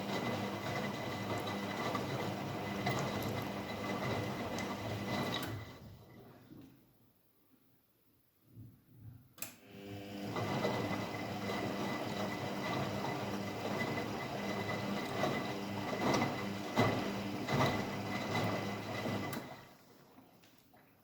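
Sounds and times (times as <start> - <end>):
washing machine motor humming: 0.0 - 6.3, 9.6 - 19.9.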